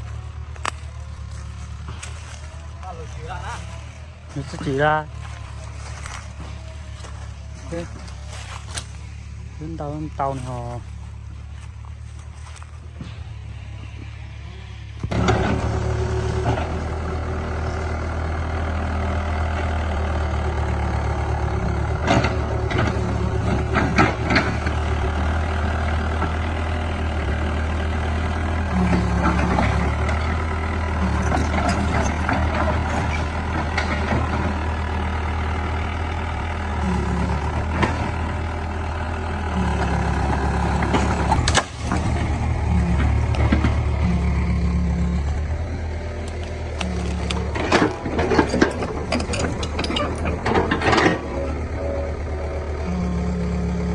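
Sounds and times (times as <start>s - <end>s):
heavy diesel engine running: 0.0s - 53.9s
sharp metal clanks and knocks: 46.4s - 51.5s.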